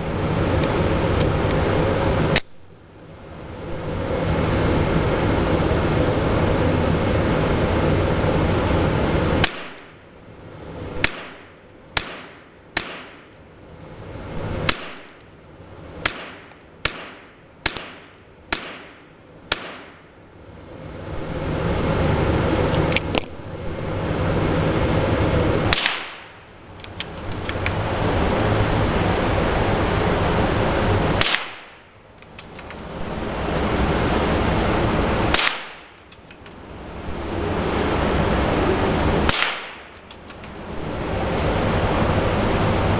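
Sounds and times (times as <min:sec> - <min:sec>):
gunshots: 0:11.0 - 0:13.3, 0:16.1 - 0:20.0, 0:25.7 - 0:26.4, 0:31.2 - 0:31.8, 0:35.3 - 0:36.0, 0:39.3 - 0:40.0.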